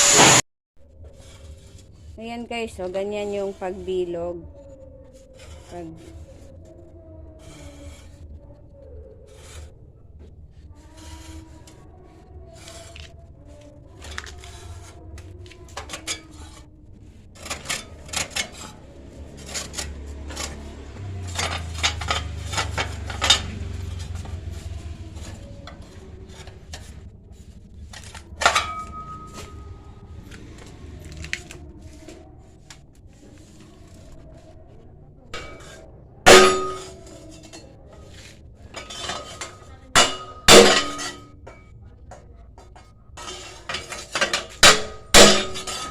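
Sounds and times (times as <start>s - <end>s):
metal clang ringing: 28.4s - 29.7s, 35.4s - 37.0s, 38.8s - 41.6s, 43.8s - 45.9s.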